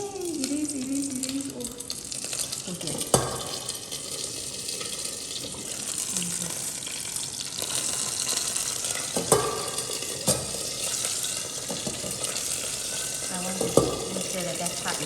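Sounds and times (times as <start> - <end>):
chicken sizzling in skillet: 0.0 - 15.0
utensil knocking on pan: 9.2 - 10.6, 13.5 - 14.3.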